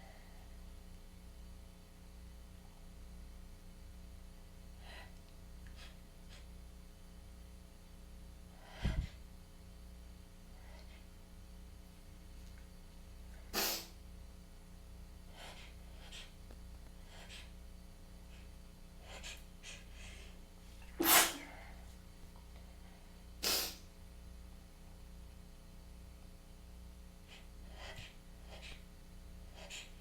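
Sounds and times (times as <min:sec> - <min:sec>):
soft breaths: 0:08.5 - 0:09.3, 0:18.2 - 0:23.9
person sneezing: 0:13.6 - 0:14.0, 0:20.9 - 0:21.7, 0:23.4 - 0:23.8.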